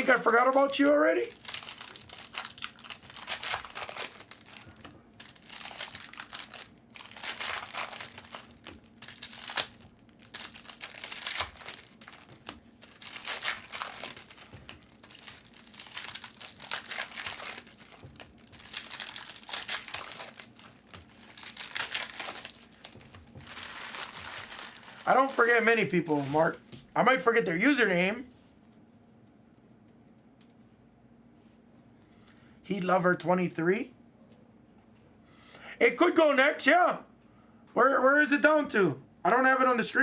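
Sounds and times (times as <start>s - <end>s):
wrappers crinkling and tearing: 0.0s - 26.7s.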